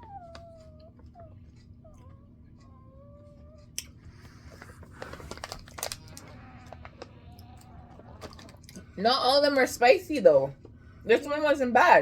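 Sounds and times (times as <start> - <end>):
people chewing candy: 0.0 - 9.0.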